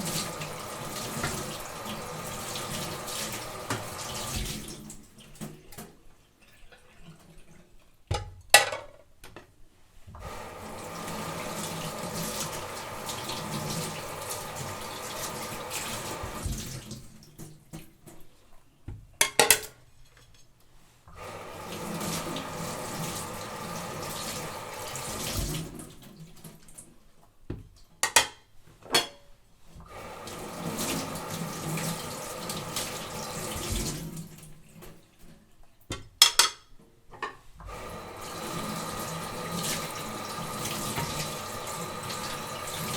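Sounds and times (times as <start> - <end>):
kitchen tap running: 0.0 - 5.9, 10.2 - 18.1, 21.1 - 26.8, 29.8 - 35.1, 37.7 - 42.9
dishes clinking together: 28.0 - 29.2.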